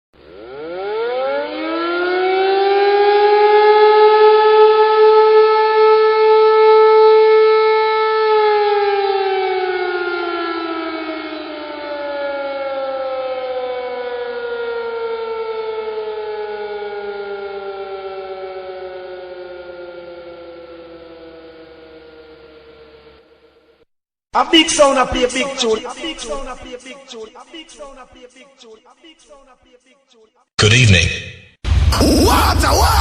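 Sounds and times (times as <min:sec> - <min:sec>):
air-raid siren wailing: 0:00.2 - 0:23.8.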